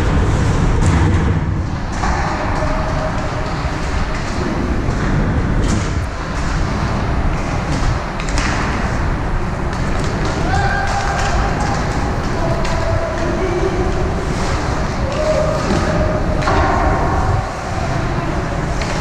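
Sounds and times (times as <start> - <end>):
ice rink game rumble: 0.0 - 19.0
sharp clacks of sticks and puck: 0.8 - 19.0.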